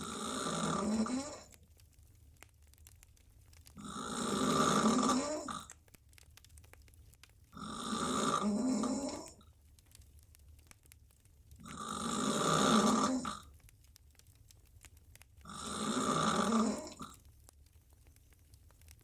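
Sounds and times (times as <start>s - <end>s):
woman snoring loudly: 0.0s - 1.5s, 3.8s - 5.6s, 7.6s - 9.4s, 11.7s - 13.4s, 15.5s - 17.1s.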